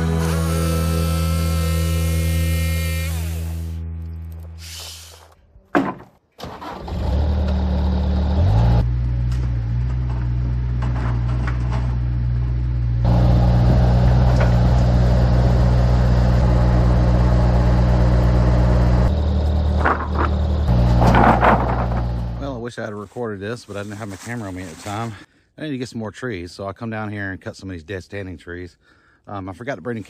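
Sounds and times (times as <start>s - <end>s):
engine starting and running: 6.3s - 22.4s.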